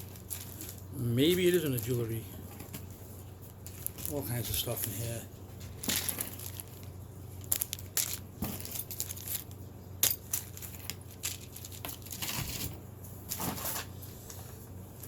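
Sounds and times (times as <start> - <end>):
plastic packaging crinkling: 0.0 - 5.1, 5.7 - 9.5.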